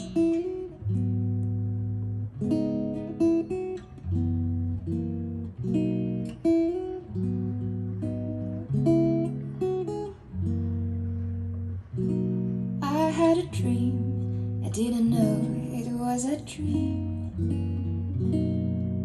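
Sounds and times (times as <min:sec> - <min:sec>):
acoustic guitar chords: 0:00.0 - 0:19.0.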